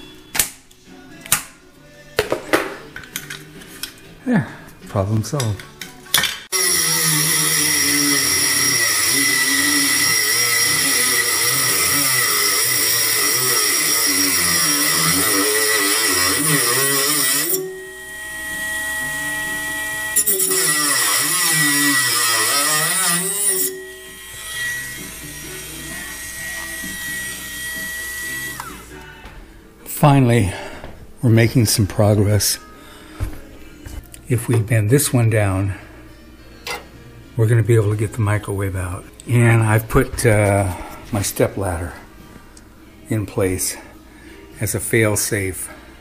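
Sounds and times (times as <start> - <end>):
rotary tool cutting sheet metal: 6.5 - 28.9.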